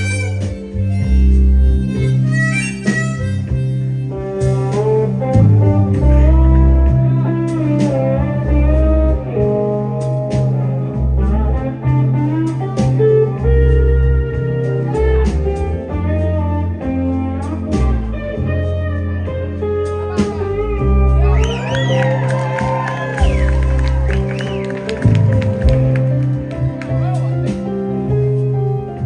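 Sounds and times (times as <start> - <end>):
bass guitar: 0.0 - 29.0
drums: 0.0 - 29.0
lead guitar solo: 6.2 - 28.4.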